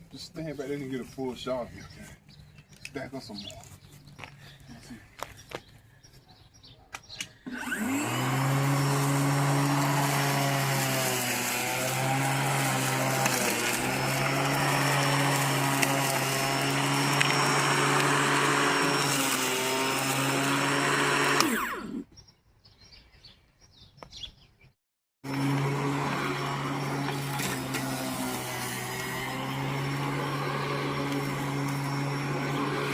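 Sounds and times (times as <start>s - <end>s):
electric lawnmower running: 7.5s - 22.1s, 25.2s - 32.9s.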